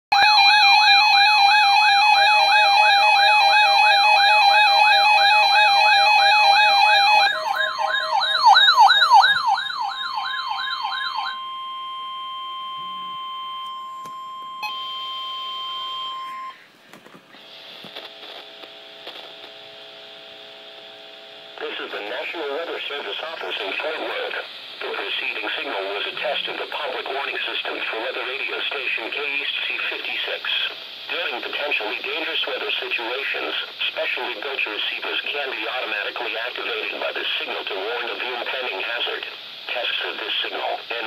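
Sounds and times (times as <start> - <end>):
steady warning alarm tone: 0.1 - 16.6
warbling electronic siren: 0.1 - 16.6
faint radio hiss: 16.5 - 41.0.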